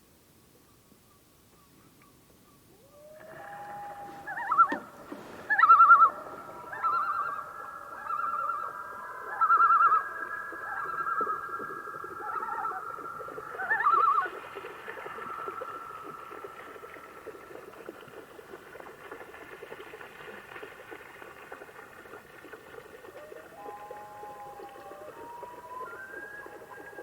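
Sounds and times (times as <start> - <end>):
loons quavering calls: 2.7 - 17.0
loons wailing: 2.7 - 17.3, 23.2 - 27.0.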